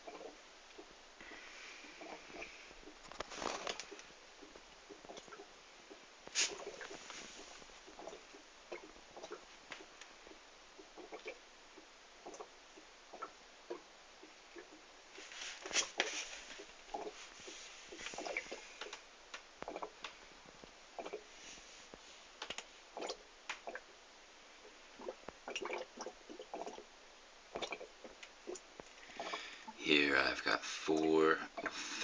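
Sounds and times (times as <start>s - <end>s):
airlock bubbling and gurgling: 0.0s - 1.0s, 1.9s - 3.0s, 3.8s - 14.8s, 18.1s - 18.8s, 19.6s - 20.0s, 21.0s - 21.3s, 22.9s - 24.0s, 24.6s - 30.5s.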